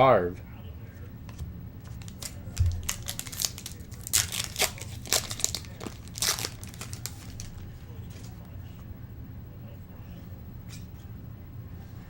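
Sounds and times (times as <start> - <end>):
wrapper tearing and crinkling: 2.0 - 7.6.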